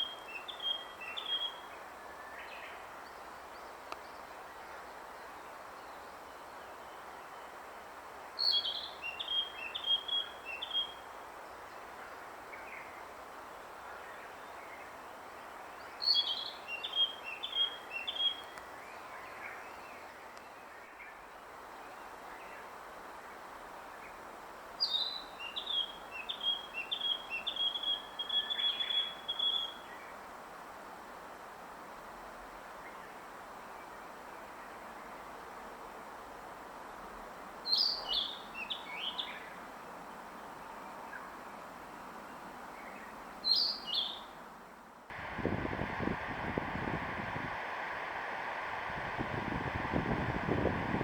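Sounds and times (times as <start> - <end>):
songbird singing: 0.0 - 7.6, 8.4 - 22.7, 24.8 - 30.2, 37.7 - 39.6, 42.3 - 44.4
outdoor hiss: 44.9 - 51.0.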